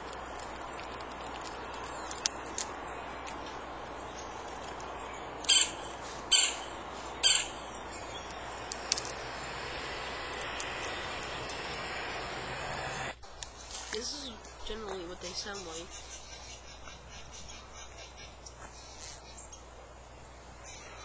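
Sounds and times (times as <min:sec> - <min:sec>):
outdoor background noise: 0:00.0 - 0:21.0.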